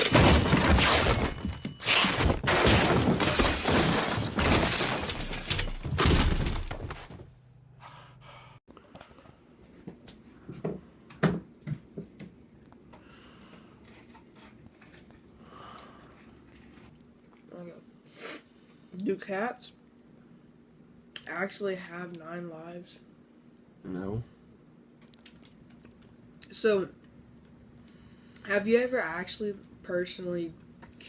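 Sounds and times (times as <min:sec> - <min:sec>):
loud crashing and clattering: 0:00.0 - 0:07.2.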